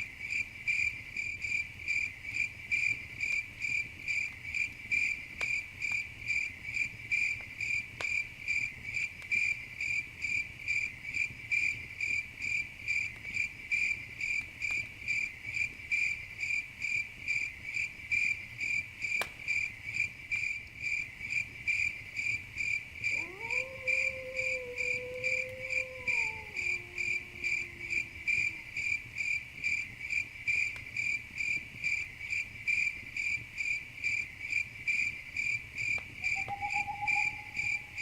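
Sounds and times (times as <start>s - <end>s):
campfire crackling: 0.0s - 38.0s
cricket chirping: 23.5s - 38.0s.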